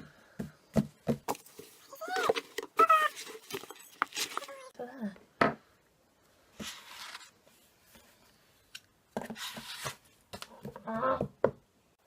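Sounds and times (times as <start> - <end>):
rubbing and scraping handling noise: 0.9 - 4.7, 6.4 - 10.9.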